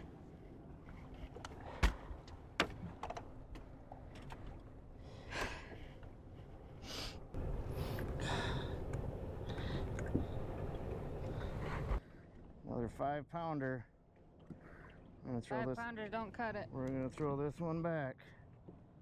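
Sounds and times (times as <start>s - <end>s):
breathy sighs: 6.8s - 8.9s.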